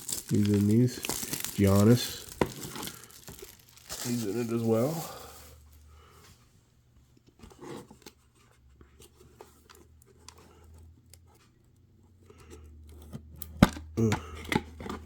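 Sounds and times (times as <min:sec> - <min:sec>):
card packaging clicks and rustles: 0:00.0 - 0:05.7.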